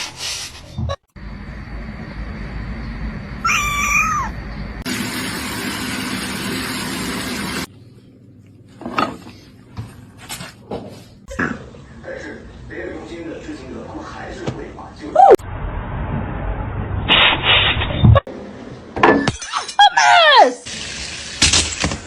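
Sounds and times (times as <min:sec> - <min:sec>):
cat meowing: 0:03.4 - 0:04.4.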